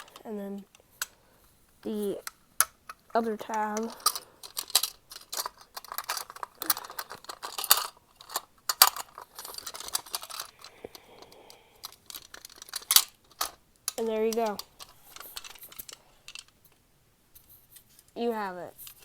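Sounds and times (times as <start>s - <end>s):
plastic tabs clicking and snapping: 2.2s - 16.8s.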